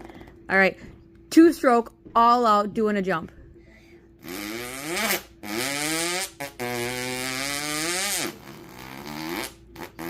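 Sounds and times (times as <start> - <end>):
person imitating dirt bike engine: 4.2 - 10.0.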